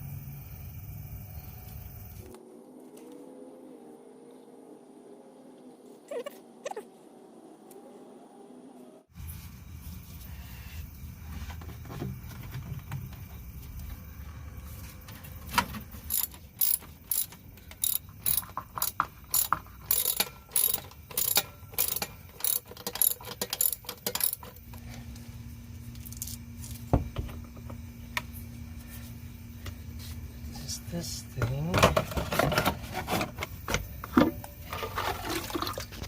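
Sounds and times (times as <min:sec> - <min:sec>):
faint steady hum: 0:00.0 - 0:36.0
ratchet wrench clicking: 0:16.1 - 0:24.6.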